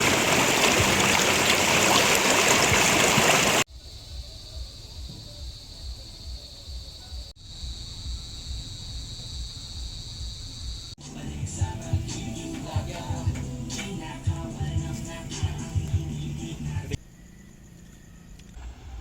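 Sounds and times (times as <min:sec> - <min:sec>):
rushing river water: 0:00.0 - 0:03.7.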